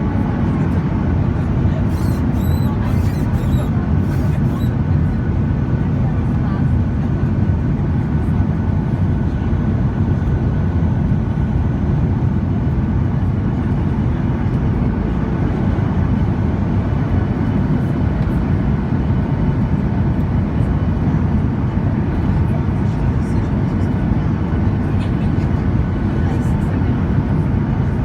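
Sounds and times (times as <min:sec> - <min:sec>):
airliner cabin engine rumble: 0:00.0 - 0:28.0.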